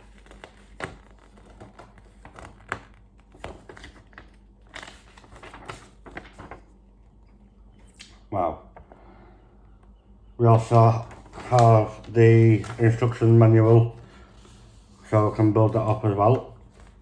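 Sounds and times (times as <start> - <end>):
plastic bags and paper crinkling: 0.0 - 6.7, 10.6 - 17.0.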